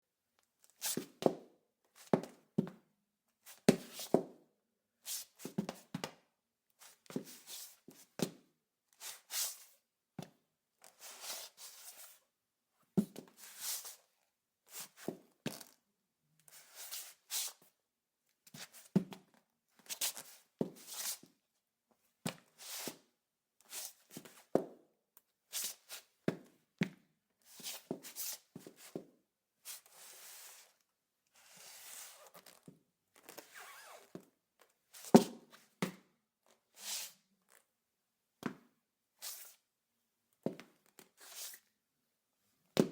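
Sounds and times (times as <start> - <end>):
shoes scuffing on tile: 5.1 - 6.1, 25.6 - 30.0, 35.0 - 36.0.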